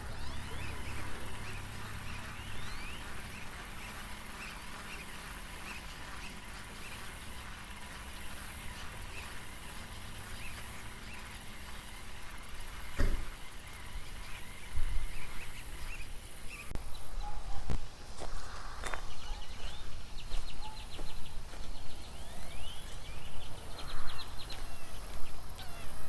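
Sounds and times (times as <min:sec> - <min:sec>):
short chirping animal calls: 0:24.5 - 0:26.0.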